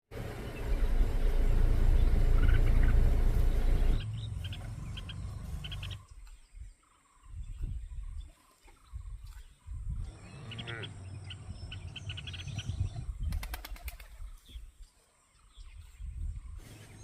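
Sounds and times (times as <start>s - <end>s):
loud low rumble: 0.2s - 6.0s.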